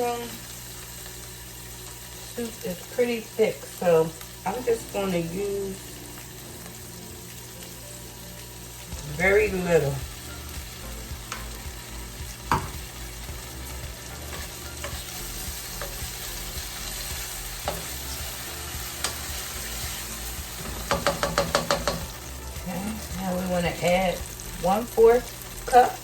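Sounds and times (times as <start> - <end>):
vegetables sizzling in a frying pan: 0.0 - 26.0
utensil knocking on pan: 12.5 - 12.9, 20.6 - 22.2.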